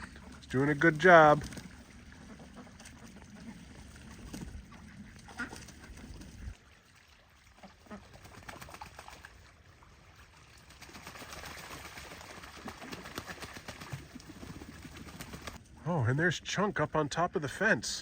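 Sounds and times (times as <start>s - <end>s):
ducks quacking: 2.0s - 6.5s, 7.6s - 8.4s.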